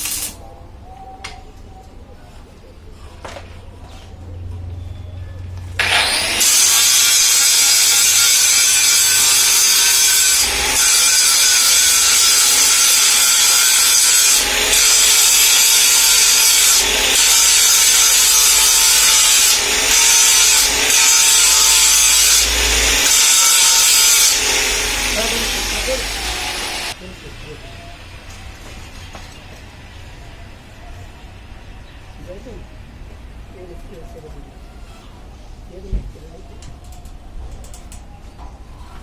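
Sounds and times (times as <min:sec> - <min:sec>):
power tool cutting: 0:00.0 - 0:00.4, 0:05.8 - 0:27.0.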